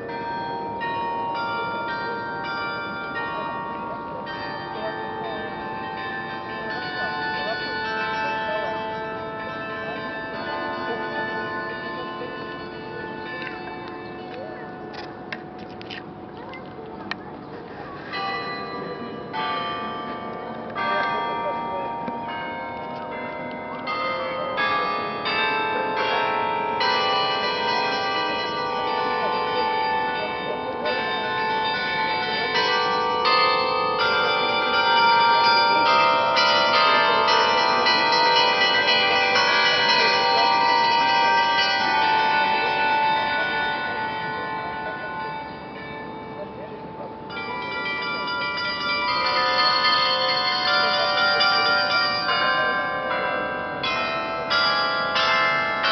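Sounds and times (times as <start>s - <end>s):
church bells ringing: 0.0s - 55.9s.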